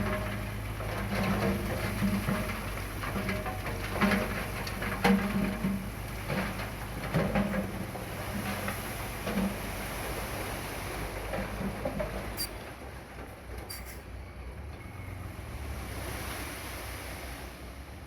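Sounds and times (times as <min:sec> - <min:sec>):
bulldozer engine running: 0:00.0 - 0:10.2.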